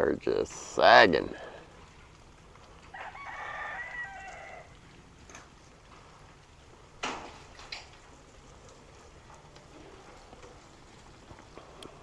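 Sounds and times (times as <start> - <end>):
rooster crowing: 2.9 - 4.8.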